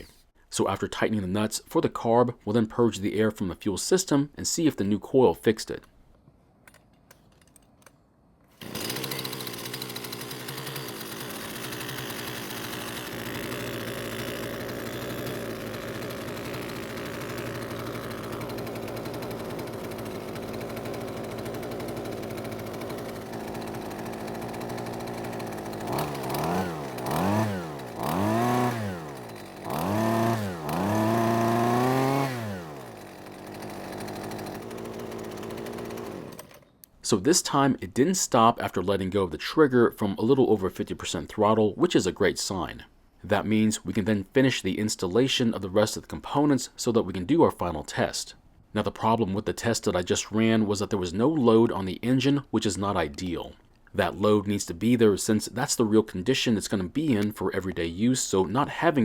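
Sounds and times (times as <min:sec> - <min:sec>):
string trimmer engine idling and revving: 0:08.6 - 0:36.7.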